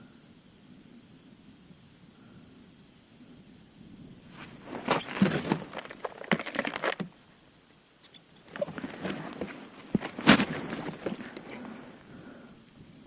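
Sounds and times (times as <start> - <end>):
crinkling crunching rustle: 4.3 - 7.2, 8.5 - 12.0.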